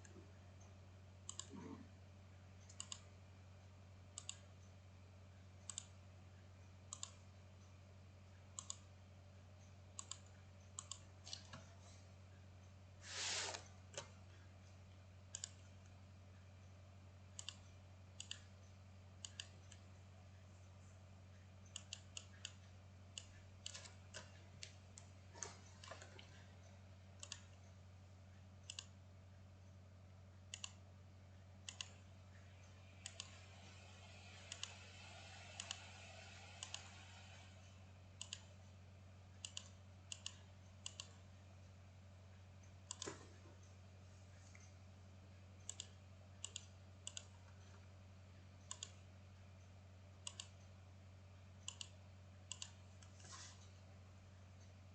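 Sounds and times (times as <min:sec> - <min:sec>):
faint low hum: 0:00.0 - 0:54.9
computer mouse clicks: 0:01.3 - 0:01.9, 0:02.6 - 0:03.1, 0:04.1 - 0:04.6, 0:05.6 - 0:06.0, 0:06.9 - 0:07.2, 0:08.6 - 0:08.9, 0:09.9 - 0:11.7, 0:15.3 - 0:16.0, 0:17.3 - 0:18.5, 0:19.2 - 0:19.9, 0:21.6 - 0:26.5, 0:27.2 - 0:27.6, 0:28.6 - 0:29.0, 0:30.5 - 0:30.8, 0:31.6 - 0:33.5, 0:34.1 - 0:37.6, 0:38.2 - 0:38.6, 0:39.4 - 0:41.2, 0:42.9 - 0:43.7, 0:45.6 - 0:47.9, 0:48.6 - 0:49.0, 0:50.2 - 0:50.6, 0:51.6 - 0:53.4.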